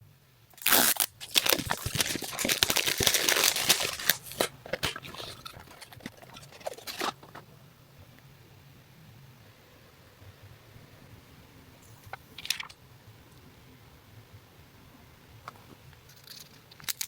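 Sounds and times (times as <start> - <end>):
packaging crinkling and tearing: 0.6 - 7.4, 16.2 - 17.0.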